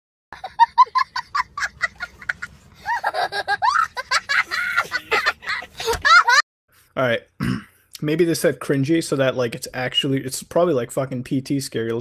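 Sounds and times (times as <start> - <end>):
man laughing: 0.4 - 6.4.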